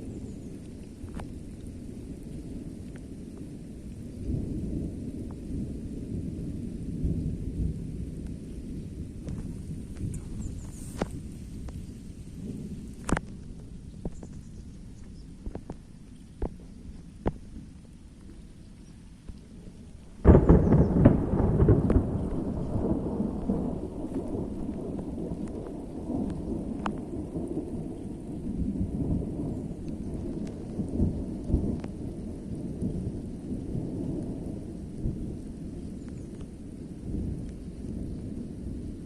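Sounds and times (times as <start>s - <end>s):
low thunder rumble: 0.0s - 39.0s
thunder crack: 20.2s - 27.4s.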